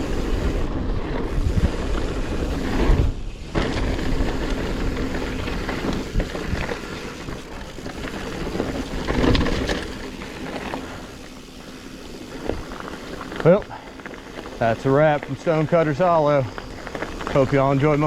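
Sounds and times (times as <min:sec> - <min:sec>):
wind rushing over microphone: 0:00.0 - 0:09.6
bike knocks and rattles: 0:00.0 - 0:11.4
bike rolling on dirt: 0:00.0 - 0:18.0.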